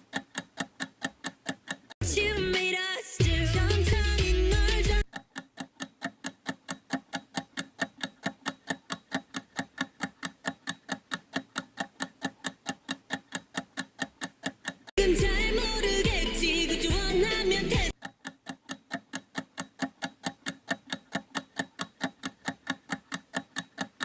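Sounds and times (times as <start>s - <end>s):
rapid clock ticking: 0.0s - 2.0s, 3.2s - 24.0s
music: 2.0s - 5.0s, 15.0s - 17.9s.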